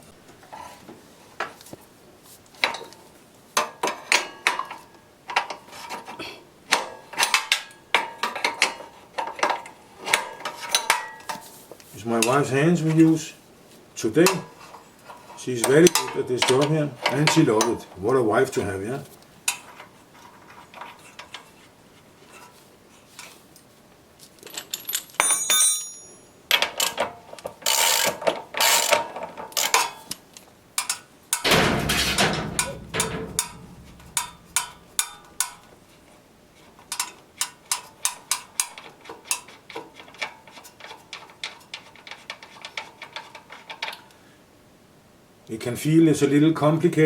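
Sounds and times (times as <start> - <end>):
spanners clinking and scraping: 12.0 - 13.3, 30.8 - 35.7
knock and rumble: 31.5 - 35.5.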